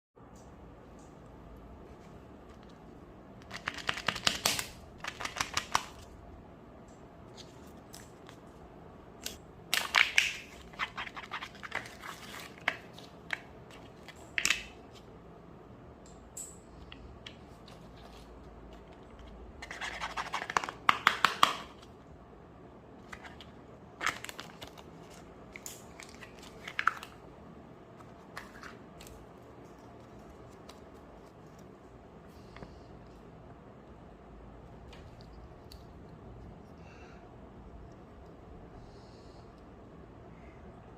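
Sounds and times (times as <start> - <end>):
foil wrappers crinkling and tearing: 24.0 - 27.1.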